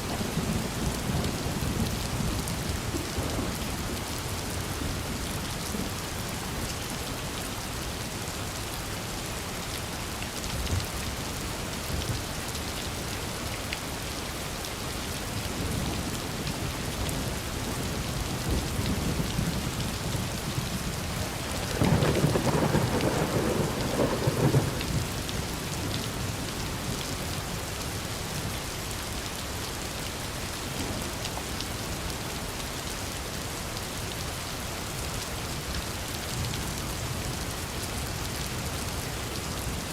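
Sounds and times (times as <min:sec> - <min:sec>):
steady rain falling: 0:00.0 - 0:39.9
thunder rumbling: 0:18.3 - 0:25.9.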